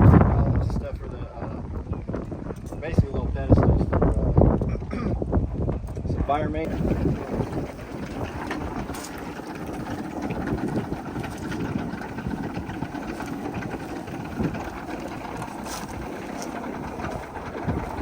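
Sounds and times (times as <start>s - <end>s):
helicopter engine and rotor drone: 6.7s - 18.0s.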